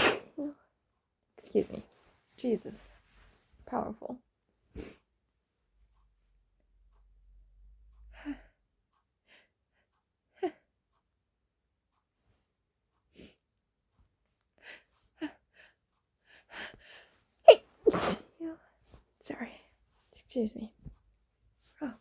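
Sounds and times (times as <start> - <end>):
woman sniffing and gasping: 17.5 - 18.3.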